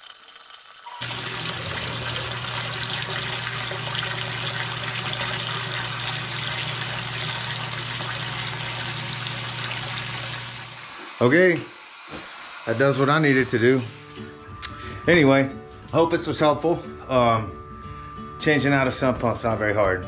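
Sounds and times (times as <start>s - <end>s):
water rushing: 0.0s - 11.5s
pump motor hum: 1.0s - 14.1s.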